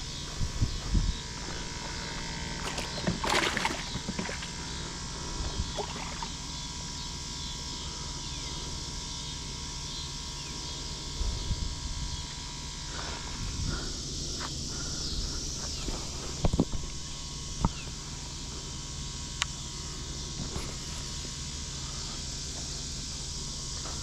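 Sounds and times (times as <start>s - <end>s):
wind rumble on microphone: 0.0s - 1.8s, 11.2s - 12.3s.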